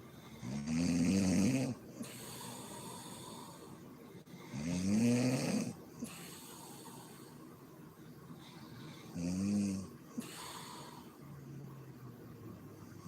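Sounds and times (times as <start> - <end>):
quiet breathing: 0.0 - 13.0
woman snoring: 0.3 - 3.7, 4.4 - 7.2, 9.0 - 11.8.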